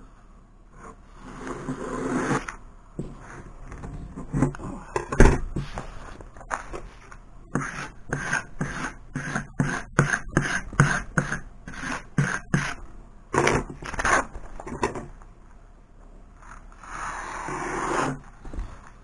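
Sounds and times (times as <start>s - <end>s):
tool scraping vinyl sheet: 0.8s - 15.1s, 16.4s - 19.0s.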